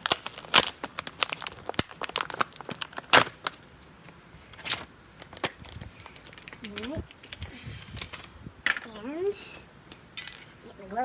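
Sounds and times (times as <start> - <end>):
plastic packaging crackling: 0.0 - 8.4
small tools clicking: 6.0 - 8.8.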